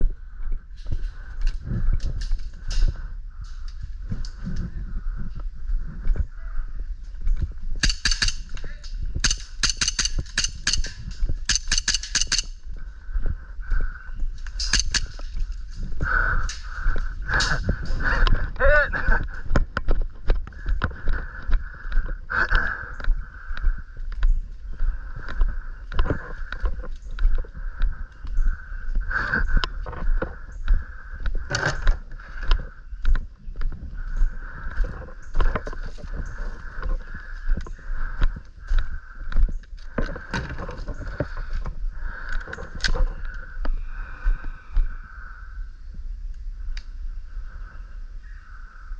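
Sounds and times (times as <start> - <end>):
low rumble: 0.0 - 48.8
airsoft gun bursts: 9.2 - 10.9, 11.5 - 12.5.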